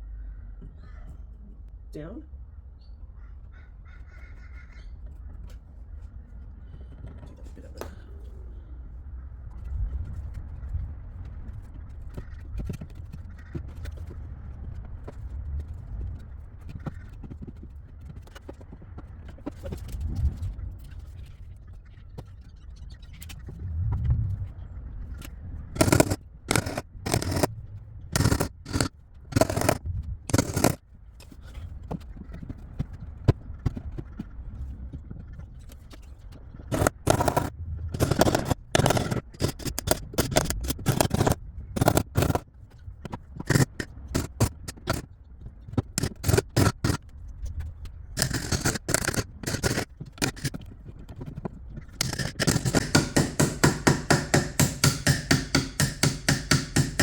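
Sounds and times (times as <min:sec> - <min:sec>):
chisel striking and scraping wood: 0:25.8 - 0:27.5, 0:28.2 - 0:34.2, 0:36.7 - 0:42.4, 0:43.0 - 0:45.1, 0:45.8 - 0:47.0, 0:48.2 - 0:57.0.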